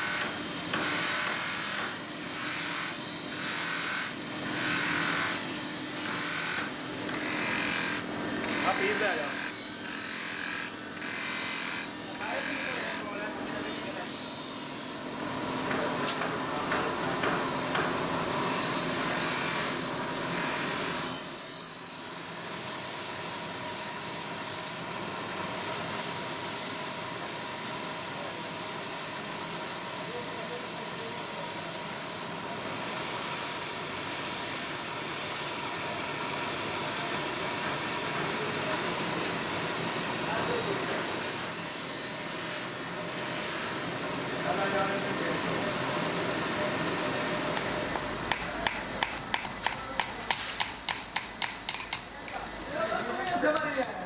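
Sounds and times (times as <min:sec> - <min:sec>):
grinding on a steel blade: 0:00.0 - 0:15.1, 0:18.4 - 0:24.8, 0:25.6 - 0:45.1, 0:45.9 - 0:49.4.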